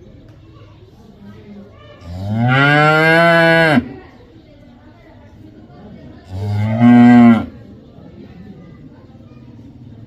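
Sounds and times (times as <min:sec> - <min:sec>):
cow mooing: 0:06.4 - 0:07.5.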